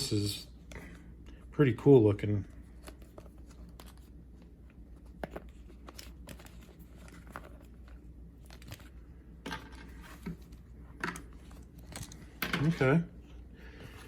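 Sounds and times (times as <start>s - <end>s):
paper pages rustling: 2.6s - 9.0s.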